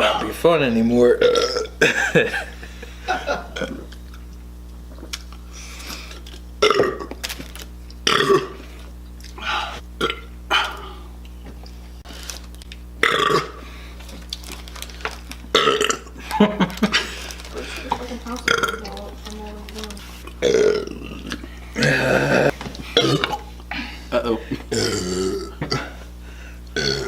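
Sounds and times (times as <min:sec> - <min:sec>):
steady low hum: 0:00.0 - 0:27.0
man belching: 0:01.0 - 0:01.9, 0:03.4 - 0:04.0, 0:06.6 - 0:07.2, 0:08.0 - 0:08.6, 0:09.4 - 0:11.1, 0:13.0 - 0:13.6, 0:15.5 - 0:16.3, 0:18.5 - 0:18.9, 0:20.3 - 0:26.0, 0:26.7 - 0:27.0.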